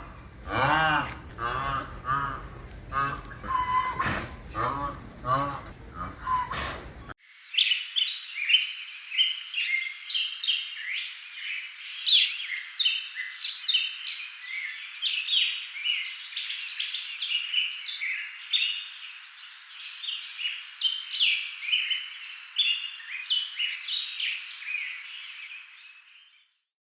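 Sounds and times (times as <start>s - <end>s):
small birds chirping and trilling: 7.3s - 26.7s.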